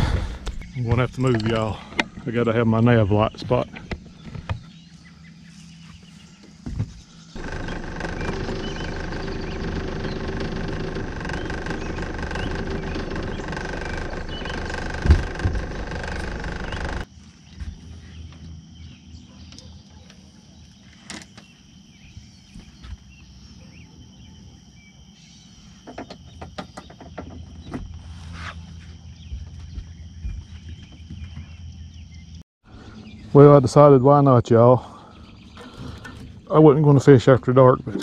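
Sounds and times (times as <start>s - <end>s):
boat motor whining: 7.2s - 17.1s
insects chirping faintly: 13.5s - 32.4s.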